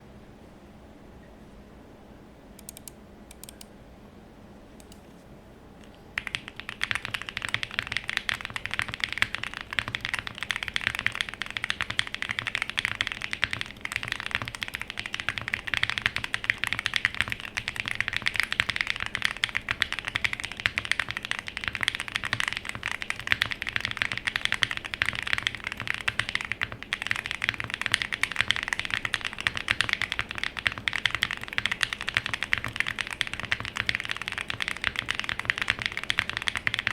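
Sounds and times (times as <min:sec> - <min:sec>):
faint keyboard clicks: 0:02.6 - 0:03.7, 0:04.8 - 0:05.2, 0:05.8 - 0:36.9
fast typing on a mechanical keyboard: 0:06.2 - 0:36.9.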